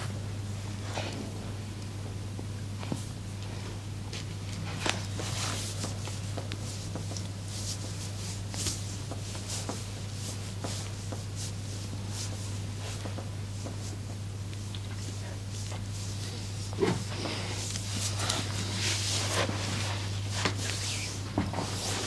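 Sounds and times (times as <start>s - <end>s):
steady low hum: 0.0s - 22.0s
hands rubbing on skin and cloth: 5.2s - 22.0s.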